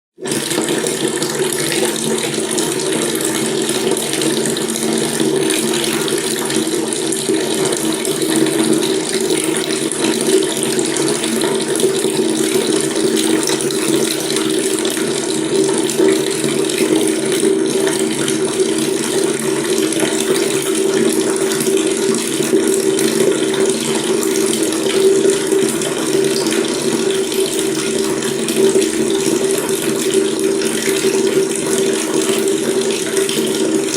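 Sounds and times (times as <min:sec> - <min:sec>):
water running from a tap: 0:00.2 - 0:33.9.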